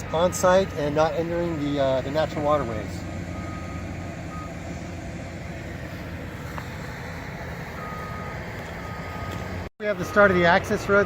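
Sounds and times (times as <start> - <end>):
backup alarm beeping: 0.0 - 1.6, 3.3 - 4.6, 7.8 - 10.4.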